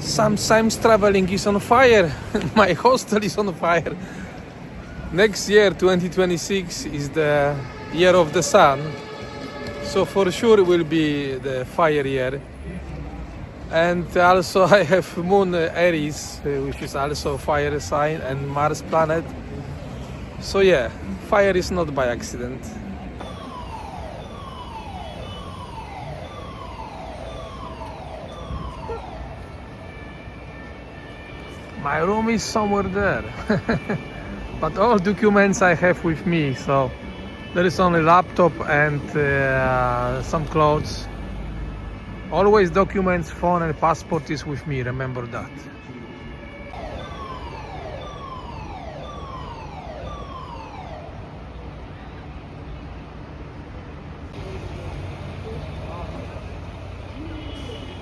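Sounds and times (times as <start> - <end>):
fire alarm falling sweep: 23.2 - 29.4, 46.7 - 51.2.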